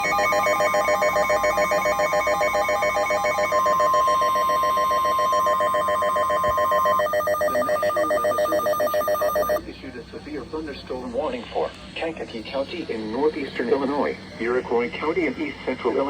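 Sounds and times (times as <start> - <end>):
rapidly pulsing electronic tones: 0.0 - 9.6
steady warning tone: 0.0 - 9.6.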